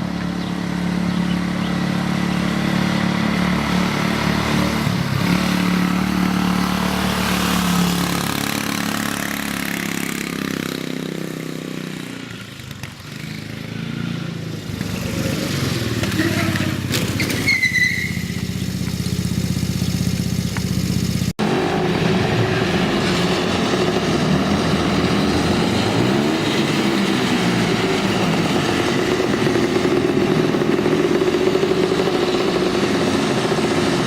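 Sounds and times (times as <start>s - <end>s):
engine revving: 0.0s - 34.0s
small engine running: 18.0s - 22.0s, 22.6s - 34.0s.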